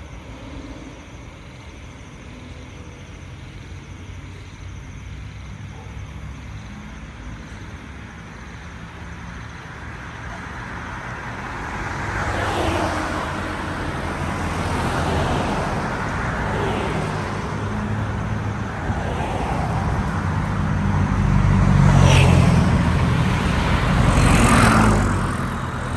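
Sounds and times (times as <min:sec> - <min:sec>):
road traffic: 0:06.6 - 0:25.9.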